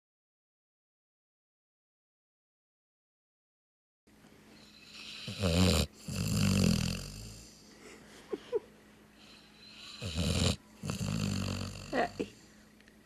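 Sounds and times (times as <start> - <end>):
dog snoring: 4.6 - 7.6, 9.2 - 12.4.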